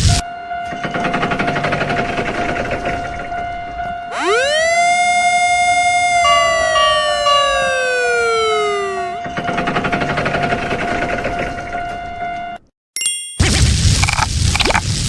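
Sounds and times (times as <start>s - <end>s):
siren-like wail: 0.0s - 12.6s
cartoon crossing bell ringing: 6.2s - 8.3s, 13.0s - 13.6s.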